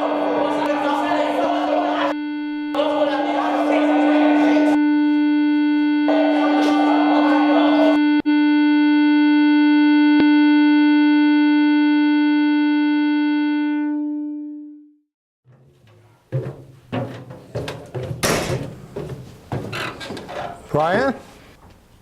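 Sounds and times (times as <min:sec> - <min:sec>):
held synthesizer note: 0:01.4 - 0:15.0.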